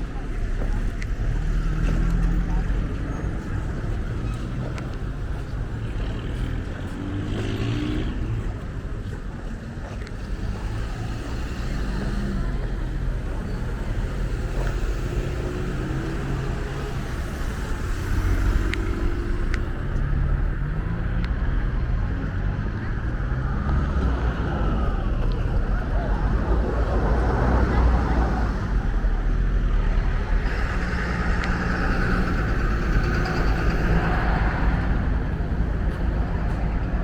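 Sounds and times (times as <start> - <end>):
motor vehicle engines rumbling: 0.0 - 37.0.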